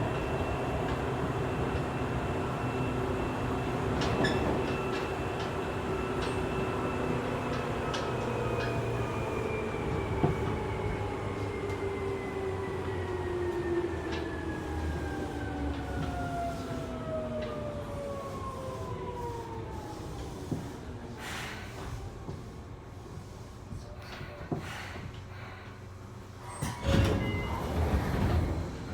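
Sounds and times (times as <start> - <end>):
train running rumble: 20.5 - 28.9.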